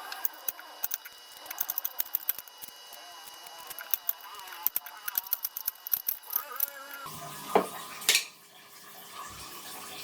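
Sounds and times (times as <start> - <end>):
utensils clinking on dishes: 7.6 - 8.4.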